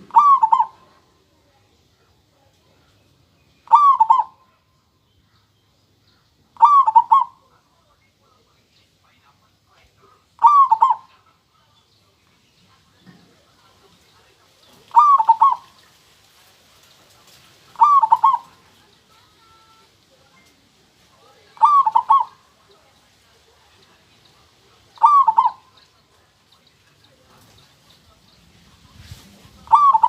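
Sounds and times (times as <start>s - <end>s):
dove cooing: 0.0s - 1.1s, 3.6s - 4.5s, 6.6s - 7.4s, 10.4s - 11.2s, 14.7s - 15.8s, 17.7s - 20.0s, 21.4s - 22.8s, 24.1s - 26.1s, 29.6s - 30.0s.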